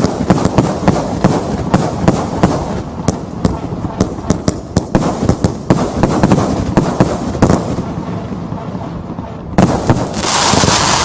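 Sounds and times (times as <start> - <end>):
firework bangs and pops: 0.0 - 11.0
firework hissing spray: 10.0 - 11.0.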